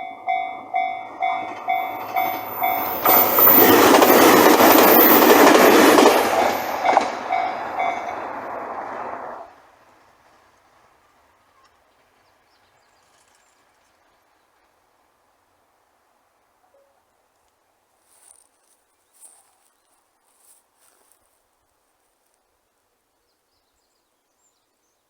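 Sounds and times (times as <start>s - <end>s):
level-crossing warning bell dinging: 0.0s - 8.2s
diesel train passing: 0.0s - 12.5s.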